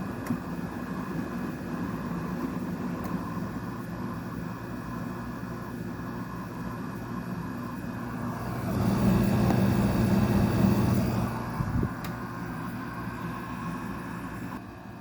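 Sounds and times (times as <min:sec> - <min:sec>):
air conditioner humming: 0:00.0 - 0:15.0
rushing air: 0:08.2 - 0:13.8.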